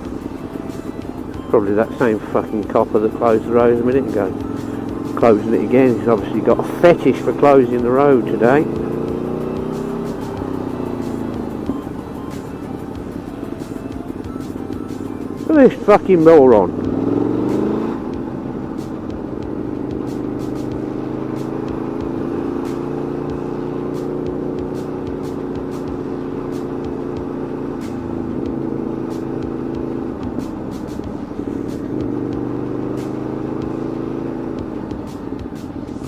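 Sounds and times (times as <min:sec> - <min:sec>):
motorcycle engine idling: 0:00.0 - 0:36.0.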